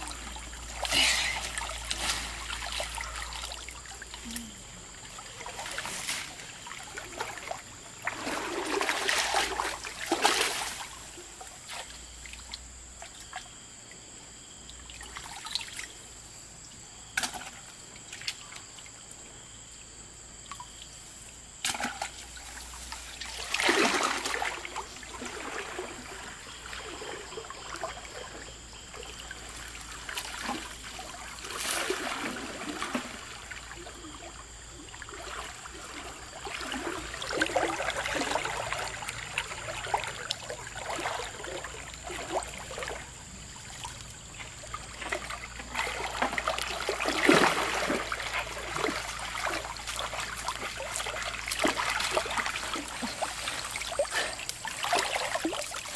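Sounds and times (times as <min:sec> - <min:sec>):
water trickling and splashing: 0:00.0 - 0:55.9.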